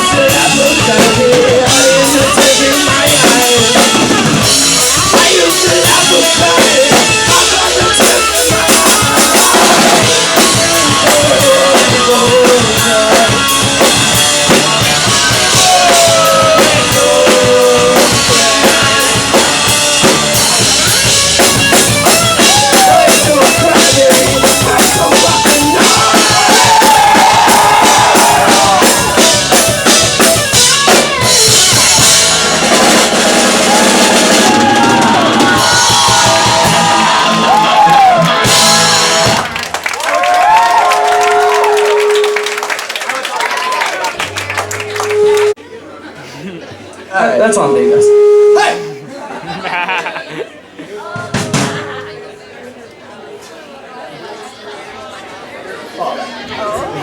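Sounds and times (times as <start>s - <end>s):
drum kit bass drum and snare: 0.0s - 39.7s, 51.2s - 52.2s
live rock band playing: 0.0s - 46.1s, 47.1s - 52.8s
pitch-bending melody lines: 44.2s - 45.6s, 47.2s - 49.3s, 51.3s - 52.8s.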